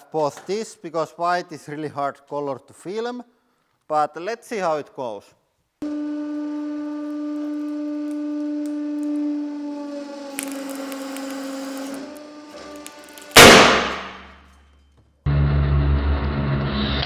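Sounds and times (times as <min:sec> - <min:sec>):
hydraulic pump whining: 0:05.8 - 0:13.4
crackling hiss: 0:10.3 - 0:14.2
loud bang of string bursting: 0:13.3 - 0:14.3.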